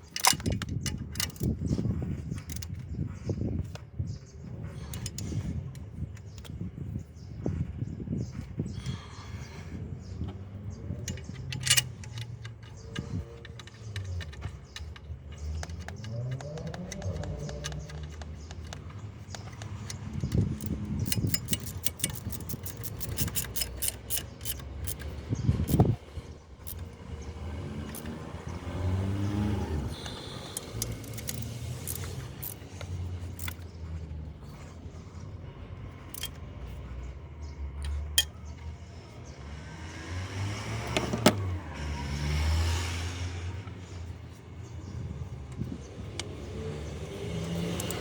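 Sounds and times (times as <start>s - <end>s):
metal tool clinks and clicks: 0.0s - 1.6s, 10.9s - 28.5s, 29.3s - 33.8s, 36.0s - 36.4s, 47.2s - 48.0s.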